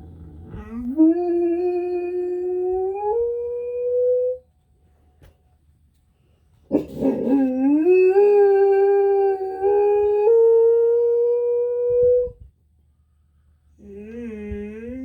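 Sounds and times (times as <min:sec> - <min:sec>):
dog howling: 0:00.0 - 0:04.4, 0:06.7 - 0:12.4.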